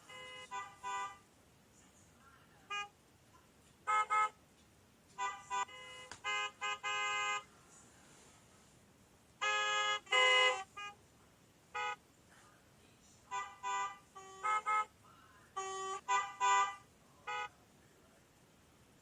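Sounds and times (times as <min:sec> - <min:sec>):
car horns honking: 0:00.0 - 0:01.3, 0:02.7 - 0:03.0, 0:03.8 - 0:04.4, 0:05.1 - 0:07.5, 0:09.4 - 0:11.0, 0:11.7 - 0:12.1, 0:13.3 - 0:15.0, 0:15.6 - 0:17.6.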